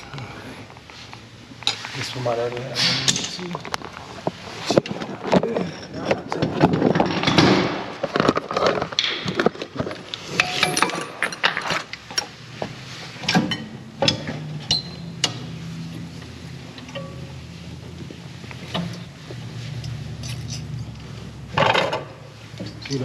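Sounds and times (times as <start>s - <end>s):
low steady hum: 9.4s - 23.0s
metallic clinks of hand tools: 10.4s - 11.5s.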